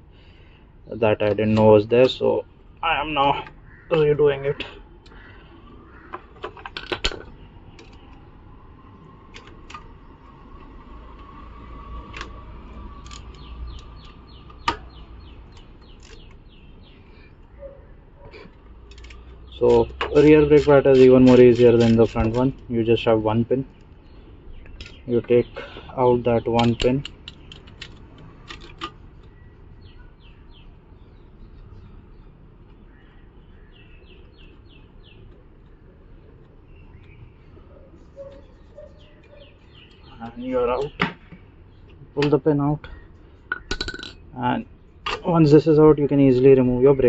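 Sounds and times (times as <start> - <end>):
low background noise: 0.0 - 47.0
bird chirping: 0.3 - 28.4, 29.0 - 47.0
sharp clicks: 26.6 - 29.4.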